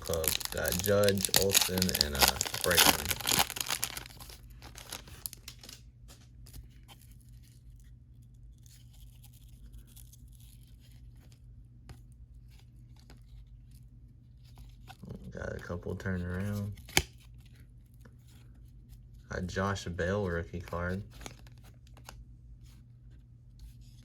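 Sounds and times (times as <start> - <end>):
wrapper crinkling and tearing: 0.0 - 6.6
cards rustling and ticking: 0.0 - 24.0
steady low hum: 0.0 - 24.0.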